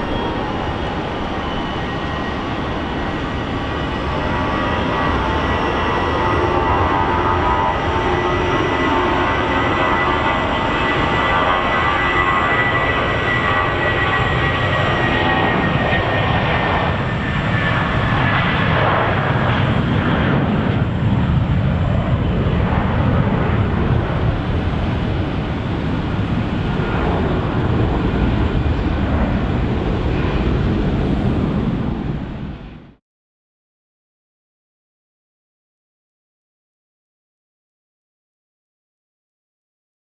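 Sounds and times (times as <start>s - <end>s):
jet engines running loudly: 0.0s - 33.0s.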